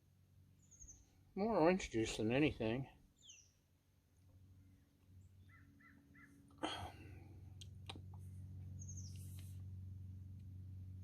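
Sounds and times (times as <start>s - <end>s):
low steady hum: 0.0s - 11.0s
faint bird calls: 4.6s - 7.3s.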